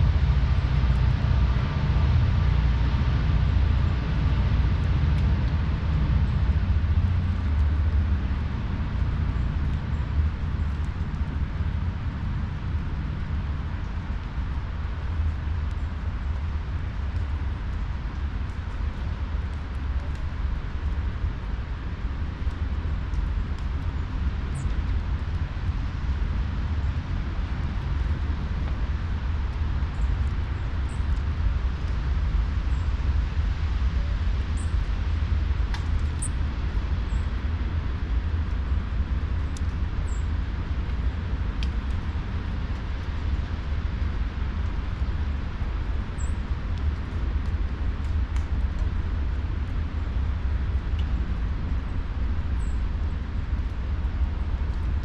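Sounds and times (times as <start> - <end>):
steady low rumble: 0.0 - 55.0.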